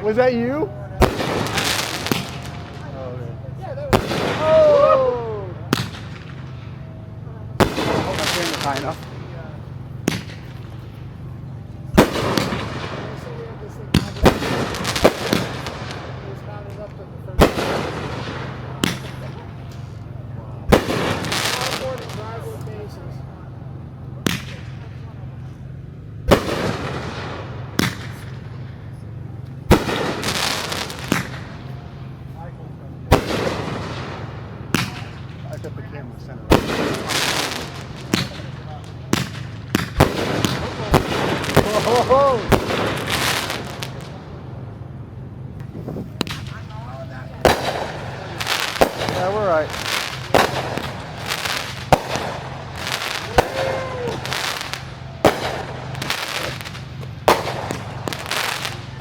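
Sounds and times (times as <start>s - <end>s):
fireworks bangs: 0.0s - 59.0s
fireworks crackling: 0.0s - 59.0s
low steady hum: 0.0s - 59.0s
fireworks shells bursting: 45.6s - 59.0s.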